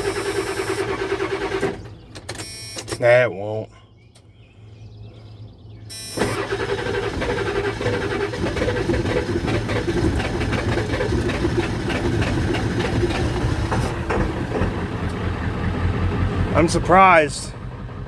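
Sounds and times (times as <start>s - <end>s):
diesel engine clattering: 0.0s - 3.2s, 6.1s - 18.0s
starter cranking: 6.2s - 15.2s.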